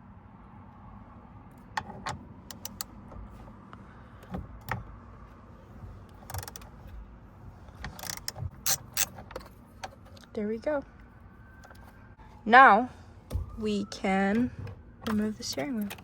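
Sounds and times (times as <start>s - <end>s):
hand ratchet clicking: 7.9s - 9.1s.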